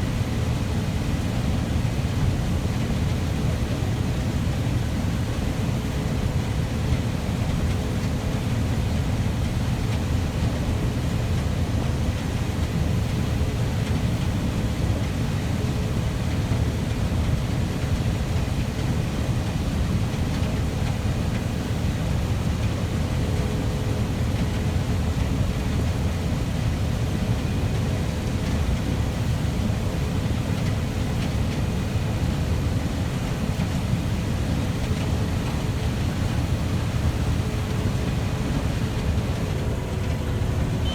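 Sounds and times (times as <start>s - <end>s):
heavy farm machinery droning: 35.4s - 40.9s.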